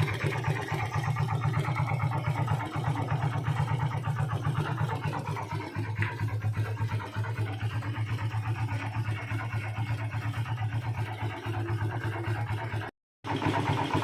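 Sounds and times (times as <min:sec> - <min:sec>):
engine idling with rhythmic knock: 0:00.0 - 0:14.0.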